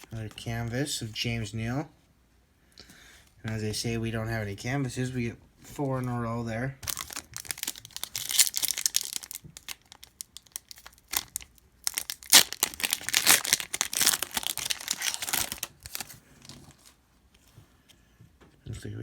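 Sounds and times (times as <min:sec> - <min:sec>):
foil wrapper tearing and crinkling: 0:06.8 - 0:17.0.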